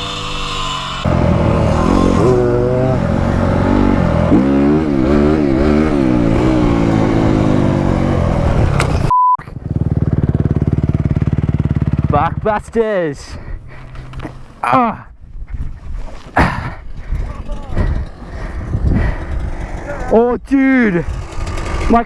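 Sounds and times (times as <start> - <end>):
dirt bike engine revving: 0.0 - 12.8, 20.8 - 22.0
short steady beep: 9.1 - 9.5.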